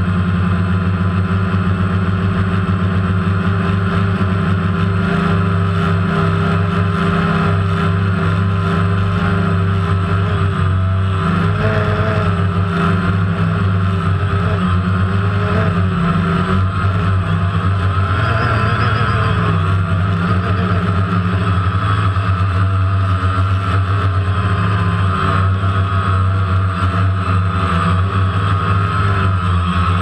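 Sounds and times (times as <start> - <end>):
drone motors humming: 0.0 - 30.0.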